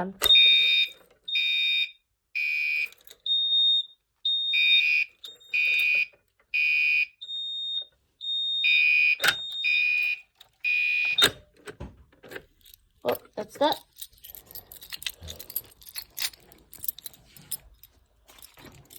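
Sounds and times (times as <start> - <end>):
buzzy fire alarm horn: 0.4 - 11.3.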